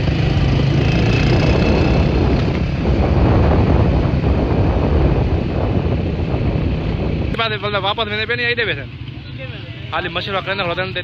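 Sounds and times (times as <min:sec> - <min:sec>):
wind buffeting microphone: 0:00.0 - 0:08.0.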